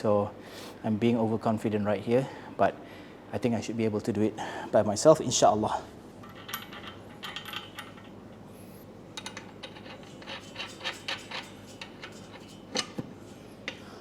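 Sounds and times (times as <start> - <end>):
metal bolts clicking and scraping: 6.2 - 8.5, 9.2 - 13.8.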